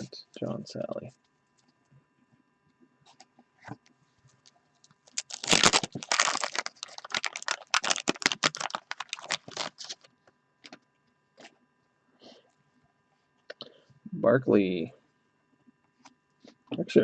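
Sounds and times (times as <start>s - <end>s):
wax paper wrapper crinkling: 5.0s - 10.1s.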